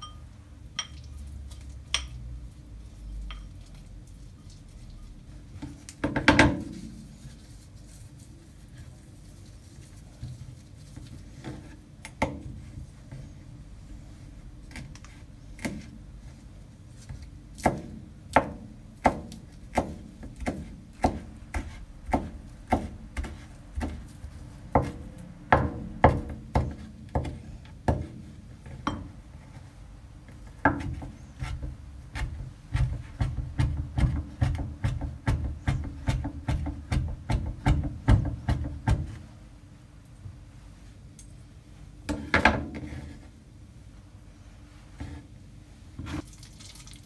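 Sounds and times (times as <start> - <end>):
knife chopping on cutting board: 17.6 - 28.2, 30.7 - 39.2.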